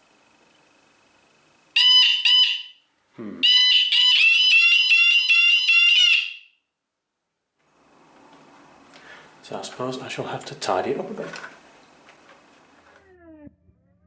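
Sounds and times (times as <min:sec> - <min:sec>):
electronic alarm chirps: 0:01.8 - 0:02.8, 0:03.4 - 0:06.6
warbling alarm siren: 0:01.8 - 0:02.8, 0:03.4 - 0:06.6.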